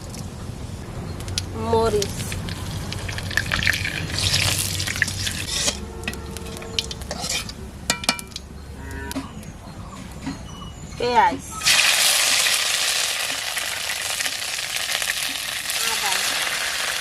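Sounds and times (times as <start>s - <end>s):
hot oil sizzling: 1.3s - 5.8s, 11.6s - 17.0s.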